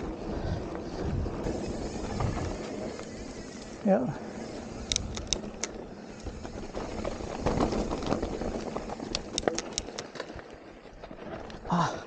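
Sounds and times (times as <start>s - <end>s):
bike tyres on dirt trail: 0.0s - 12.0s
sharp clicks: 4.8s - 6.3s.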